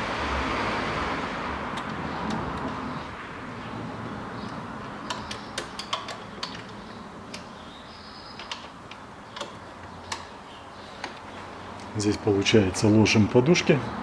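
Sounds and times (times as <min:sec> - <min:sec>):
metal tools clicking and clinking: 0:05.0 - 0:07.5.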